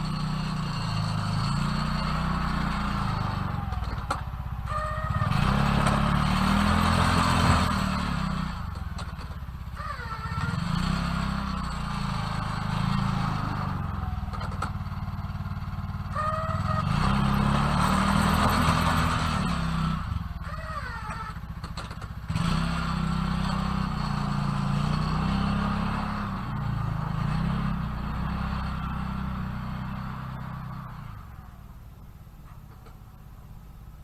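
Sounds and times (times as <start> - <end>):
snow plow engine running: 0.0 - 34.0
short squeals: 4.6 - 7.9, 9.7 - 11.1, 20.4 - 21.6.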